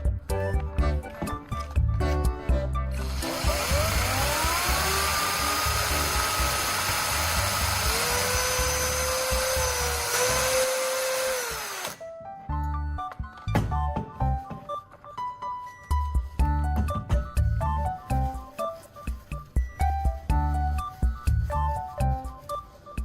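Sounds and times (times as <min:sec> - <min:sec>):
background music: 0:00.0 - 0:23.0
small electric power tool whining: 0:03.0 - 0:12.0.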